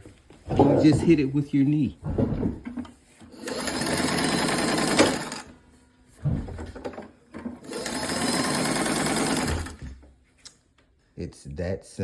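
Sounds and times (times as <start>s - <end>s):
sewing machine running: 3.3s - 5.5s, 7.4s - 9.8s.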